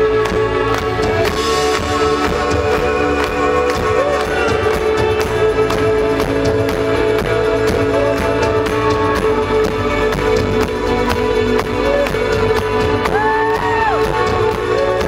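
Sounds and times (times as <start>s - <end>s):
live rock band playing: 0.0s - 15.0s
steady drum beat: 0.0s - 15.0s.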